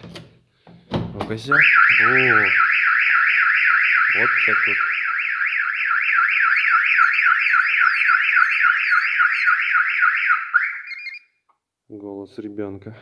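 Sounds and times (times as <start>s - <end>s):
car alarm siren: 1.5s - 11.3s.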